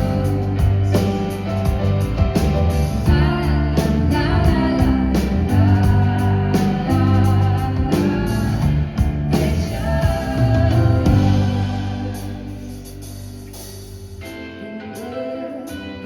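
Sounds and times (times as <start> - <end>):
person singing: 0.0 - 1.4, 3.0 - 13.2, 14.3 - 16.0
pop-rock band playing: 0.0 - 16.0.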